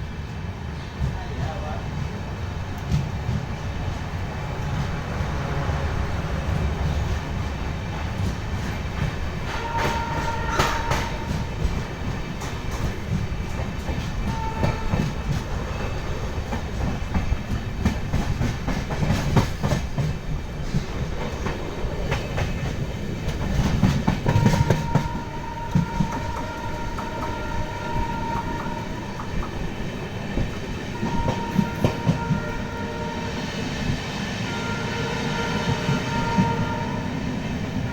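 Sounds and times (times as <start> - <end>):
train rumbling on tracks: 0.0 - 37.9
wheels clicking over rail joints: 7.9 - 32.5.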